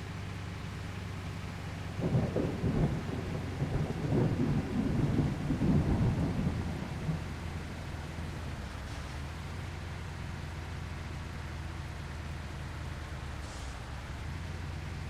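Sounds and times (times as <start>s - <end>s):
truck engine drone: 0.0s - 15.0s.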